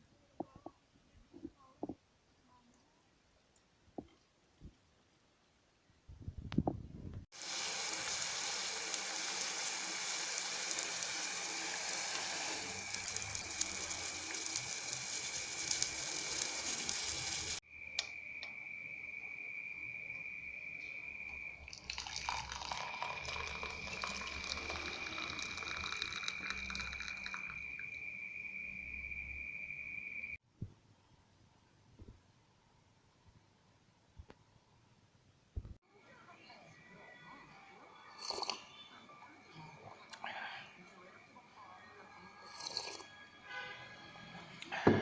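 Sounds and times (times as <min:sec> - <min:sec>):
water running: 0:07.4 - 0:17.6, 0:21.6 - 0:28.0
clicking: 0:18.0 - 0:18.6.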